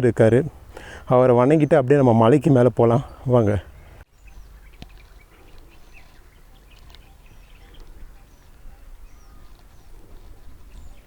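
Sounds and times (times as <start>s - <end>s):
small birds chirping: 0.0s - 11.0s
wind rumble on microphone: 3.7s - 11.0s.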